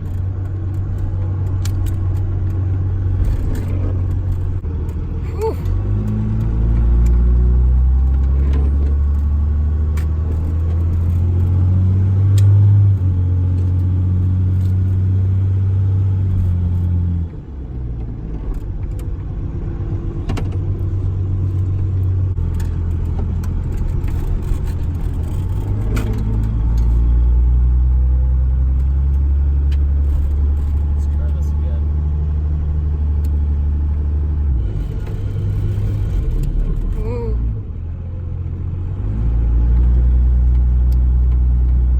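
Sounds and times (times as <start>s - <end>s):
light rattles and clicks: 0.0s - 7.3s, 20.1s - 27.1s, 28.7s - 31.9s, 34.6s - 37.3s
diesel engine under load: 0.0s - 41.9s.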